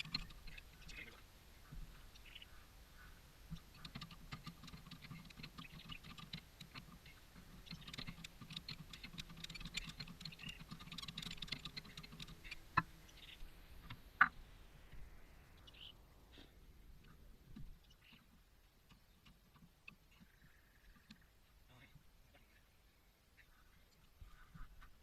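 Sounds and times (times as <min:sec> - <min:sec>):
small clicks and ticks: 0:00.0 - 0:01.2, 0:03.5 - 0:14.4, 0:17.0 - 0:22.5.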